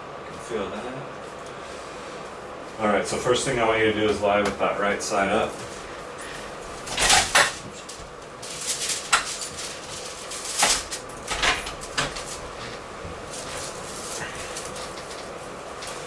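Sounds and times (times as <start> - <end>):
rustling on padded table: 11.7 - 16.0.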